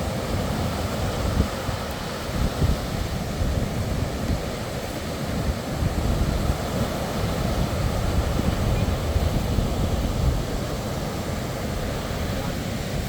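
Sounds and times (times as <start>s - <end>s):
sea surf rushing: 0.0s - 13.0s
wind buffeting microphone: 0.0s - 13.0s.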